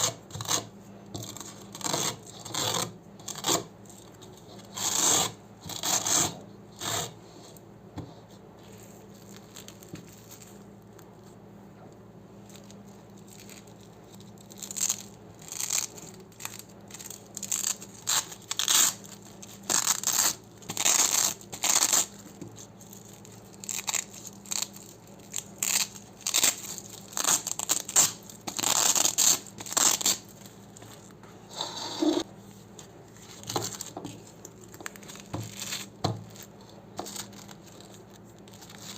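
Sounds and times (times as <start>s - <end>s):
velcro strips ripping: 12.6s - 30.9s, 33.4s - 38.9s.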